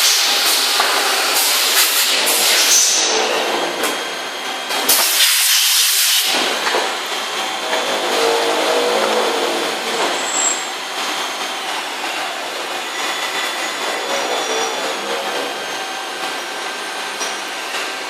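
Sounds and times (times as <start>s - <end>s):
machine whirring with whining tones: 0.0s - 18.0s
hissing air burst: 4.9s - 6.4s.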